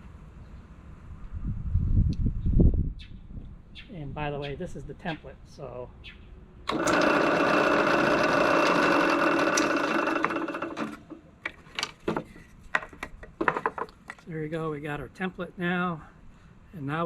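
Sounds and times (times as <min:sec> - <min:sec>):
drill press drilling wood: 0:06.7 - 0:11.2.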